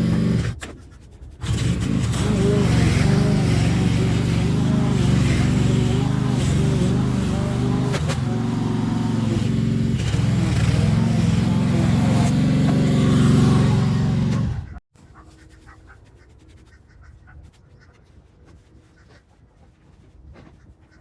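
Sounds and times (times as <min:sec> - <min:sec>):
small petrol engine running: 0:00.0 - 0:00.6, 0:01.4 - 0:14.8.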